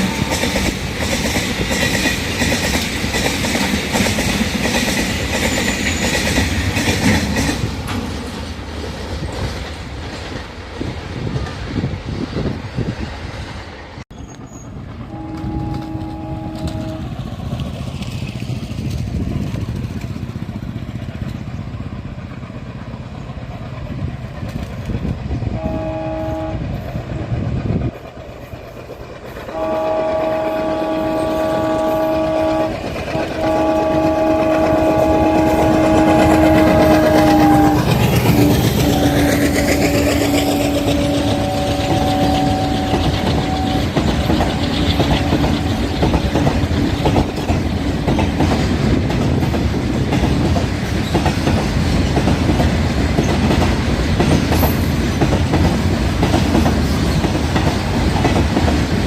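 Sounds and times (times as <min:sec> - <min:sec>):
freight train rumbling past: 0:00.0 - 0:59.0
locomotive horn blasts: 0:15.0 - 0:17.2, 0:25.5 - 0:26.9, 0:29.5 - 0:45.9.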